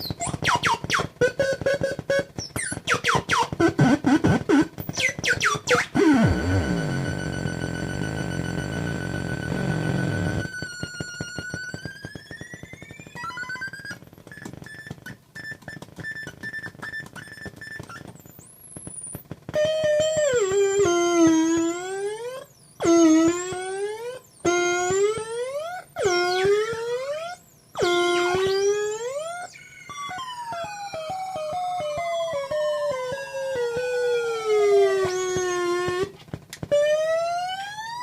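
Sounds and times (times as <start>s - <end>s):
buzzing synth tone bending: 0.0s - 15.0s.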